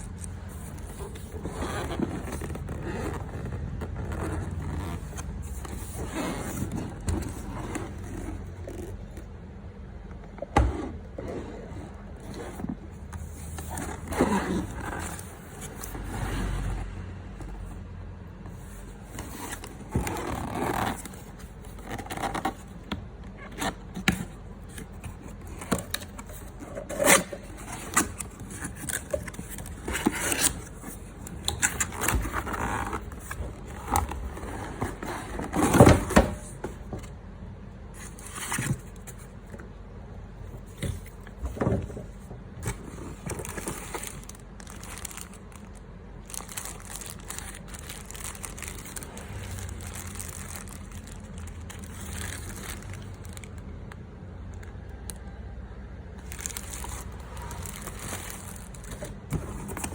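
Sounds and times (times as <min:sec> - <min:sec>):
objects being handled: 0:56.2 - 0:59.9.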